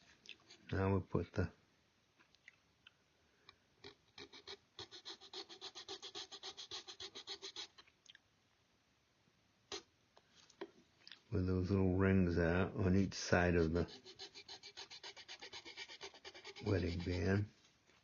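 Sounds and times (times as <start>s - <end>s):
hand file strokes: 4.2s - 7.8s, 13.3s - 17.5s.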